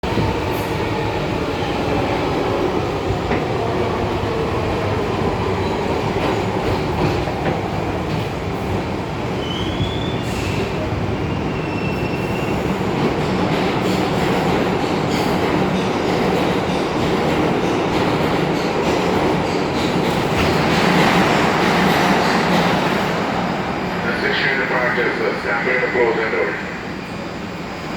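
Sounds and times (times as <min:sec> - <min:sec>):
subway train rumbling on rails: 0:00.0 - 0:27.9.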